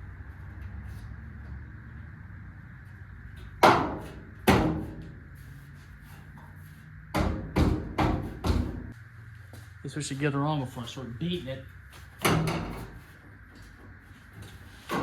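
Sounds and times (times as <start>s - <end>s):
metallic clanks on sheet metal: 12.2s - 13.0s.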